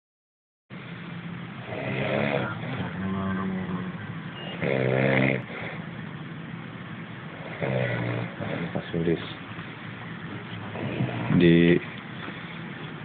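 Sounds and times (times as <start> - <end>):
man snoring: 1.6 - 3.9, 4.5 - 5.9, 7.3 - 9.2, 10.7 - 11.8.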